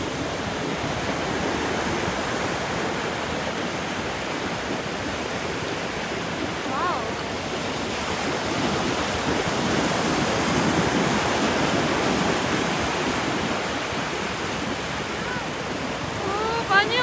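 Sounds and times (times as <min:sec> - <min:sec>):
ocean waves breaking on beach: 0:00.0 - 0:17.0.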